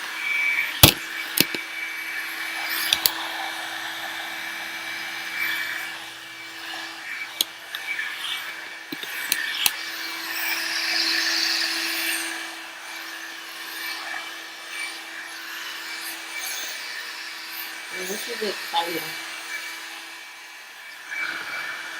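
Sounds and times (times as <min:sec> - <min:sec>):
hair dryer fan humming: 0:00.0 - 0:21.9.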